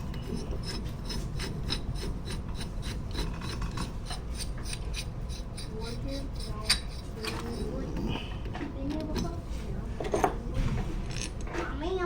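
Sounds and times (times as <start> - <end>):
ratchet wrench clicking: 0.0 - 7.7
rasping rub: 0.0 - 8.3.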